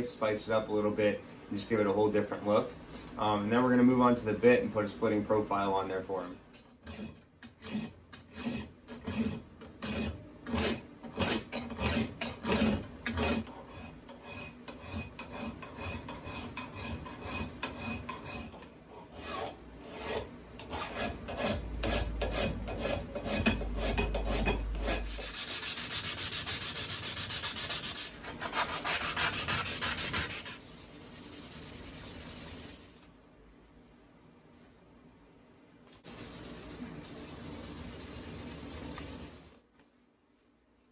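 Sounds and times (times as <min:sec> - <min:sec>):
hand file rasping on steel: 0:06.8 - 0:32.9.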